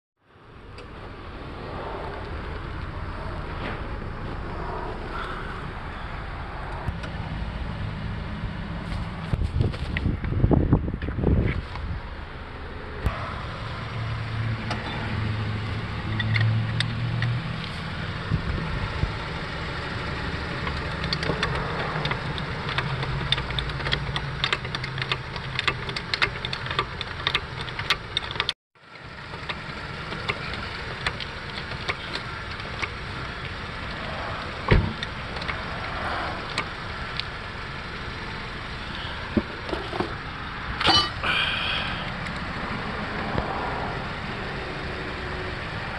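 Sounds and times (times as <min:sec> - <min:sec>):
car engine and road hum: 0:00.2 - 0:45.9
sharp clicks from steering: 0:20.6 - 0:37.3.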